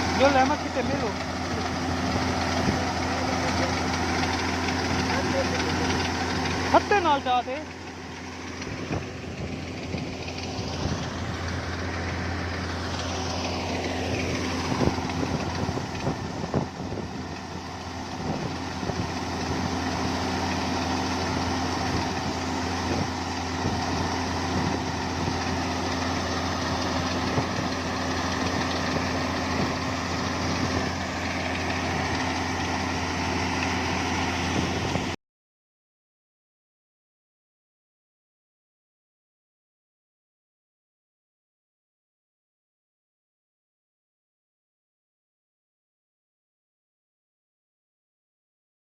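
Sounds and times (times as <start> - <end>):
diesel engine humming: 0.0 - 35.2.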